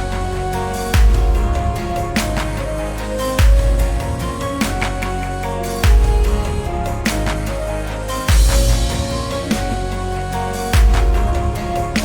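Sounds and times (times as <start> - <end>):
deep bass hit: 0.0 - 2.4, 5.8 - 7.3, 8.3 - 9.9
electronic background music: 0.0 - 12.0.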